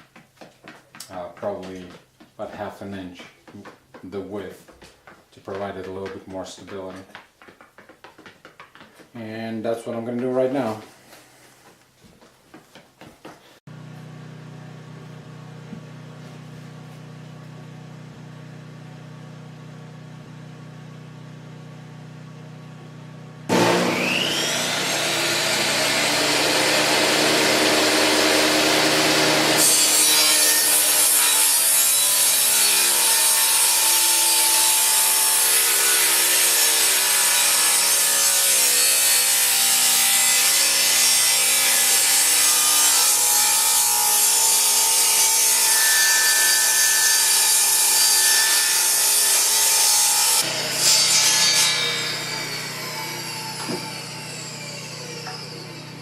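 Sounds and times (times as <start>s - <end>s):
table saw cutting wood: 13.7s - 56.0s.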